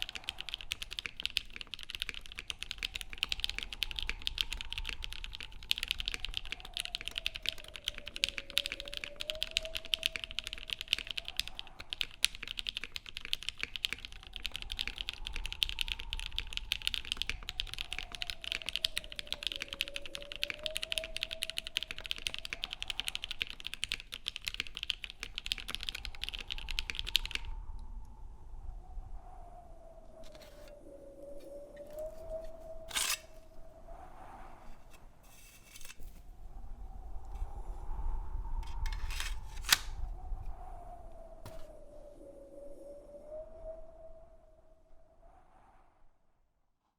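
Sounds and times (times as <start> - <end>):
fast typing on mechanical keyboard: 0.0 - 27.5.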